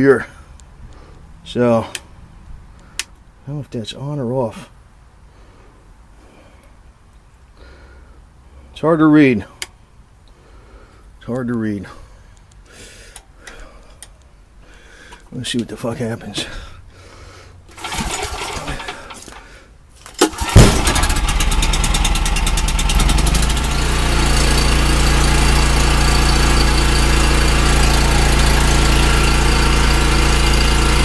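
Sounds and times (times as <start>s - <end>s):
generator engine running: 17.7s - 19.5s, 20.1s - 31.0s.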